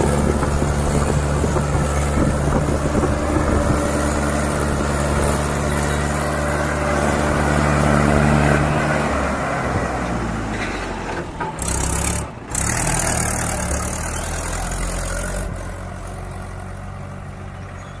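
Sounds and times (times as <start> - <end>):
vehicle engine running: 0.0 - 10.5.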